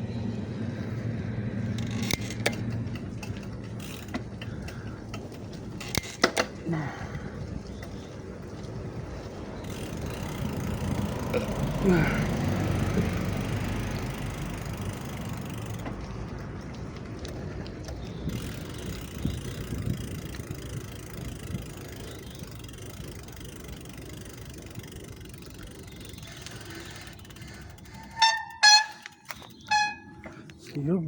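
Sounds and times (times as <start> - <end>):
bike clicks: 0.0 - 30.8
bicycle rolling: 0.0 - 31.0
wind noise: 15.9 - 24.0
squeaky brakes squealing: 25.9 - 30.5.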